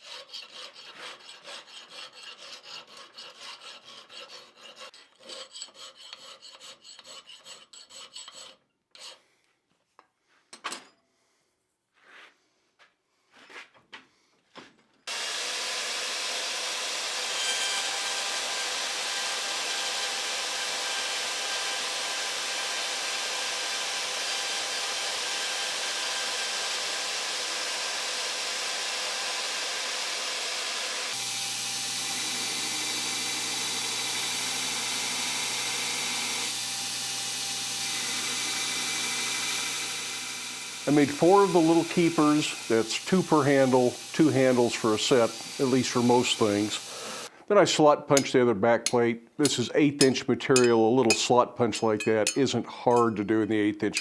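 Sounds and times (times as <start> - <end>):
hand tool strokes: 15.1 - 47.4, 48.1 - 54.0
power tool whining: 15.1 - 47.4.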